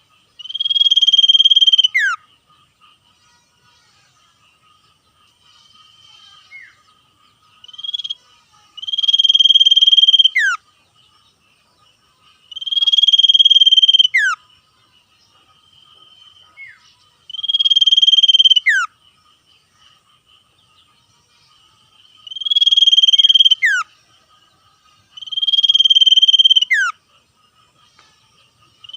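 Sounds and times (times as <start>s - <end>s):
faint high-pitched drone: 0.0s - 28.9s
bird trilling: 0.4s - 2.2s, 8.8s - 10.6s, 12.5s - 14.4s, 16.6s - 18.9s, 22.2s - 23.9s, 25.2s - 27.0s.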